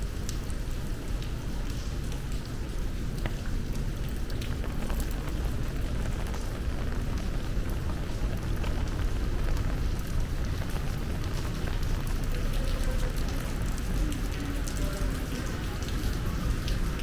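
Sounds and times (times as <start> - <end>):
close raindrop hits ticking: 0.0 - 17.0
heavy rain: 0.0 - 17.0.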